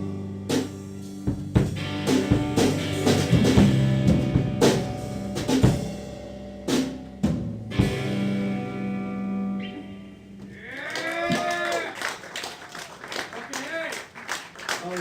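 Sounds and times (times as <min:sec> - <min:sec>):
drum kit strikes: 0:00.0 - 0:08.9.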